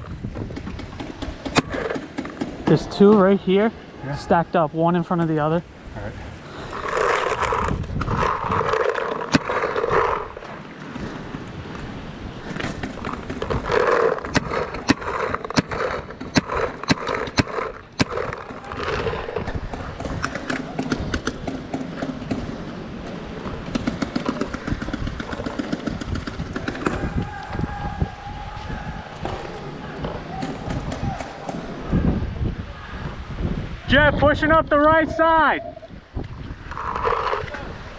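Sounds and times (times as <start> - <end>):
paintball markers firing: 7.0 - 10.3, 12.6 - 22.5.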